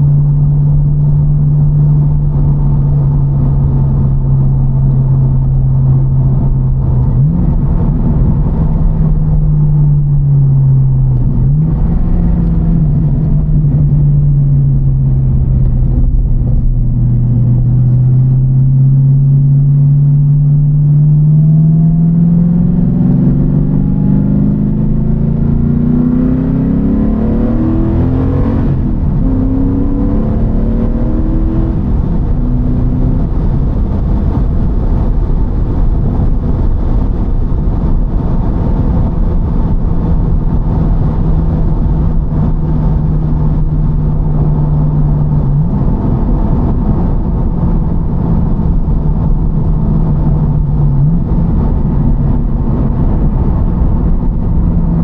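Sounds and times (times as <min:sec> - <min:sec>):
car engine revving: 0:00.0 - 0:55.0.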